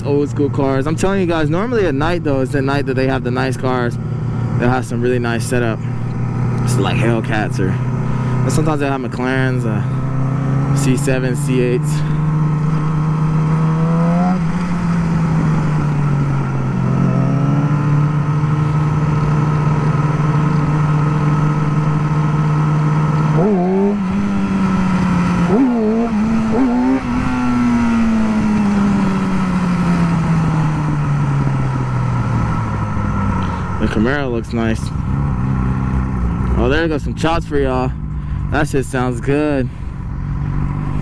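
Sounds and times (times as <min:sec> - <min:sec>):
motorcycle engine revving: 0:00.0 - 0:41.0.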